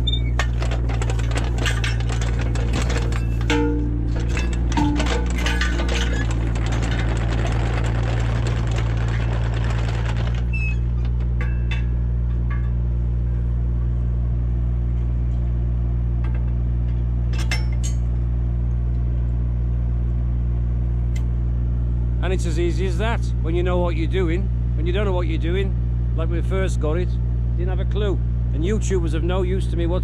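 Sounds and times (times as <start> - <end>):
metallic clinks of bucket: 0.0 - 7.9
diesel engine running: 0.0 - 30.0.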